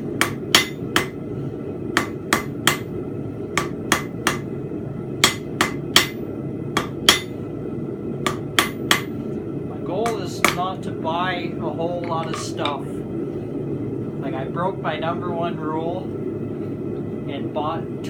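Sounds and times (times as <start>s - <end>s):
steady low noise: 0.0s - 18.0s
hammer striking steel on anvil: 0.2s - 1.2s, 2.0s - 2.9s, 3.5s - 4.5s, 5.2s - 6.2s, 6.8s - 7.4s, 8.2s - 9.1s, 10.0s - 10.6s.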